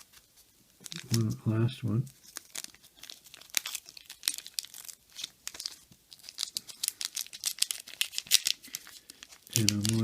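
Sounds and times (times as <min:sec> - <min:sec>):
paper wrapper tearing and crinkling: 0:00.0 - 0:10.0.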